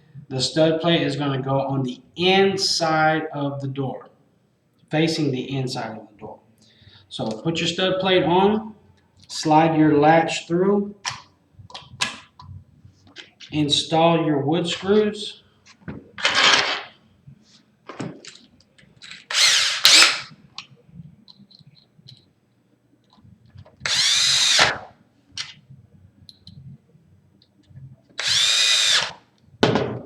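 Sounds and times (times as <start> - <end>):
power drill driving screws: 19.3 - 20.3, 23.8 - 24.8, 28.2 - 29.2.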